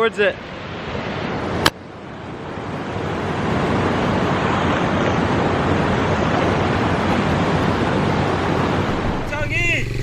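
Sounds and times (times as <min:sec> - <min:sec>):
river water rushing: 0:00.0 - 0:10.0.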